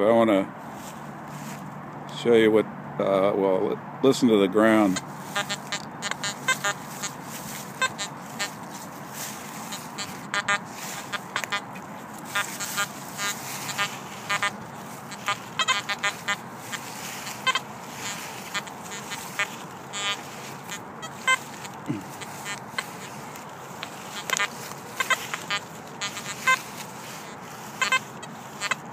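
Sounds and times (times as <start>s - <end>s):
metal detector beeps: 4.8s - 28.9s.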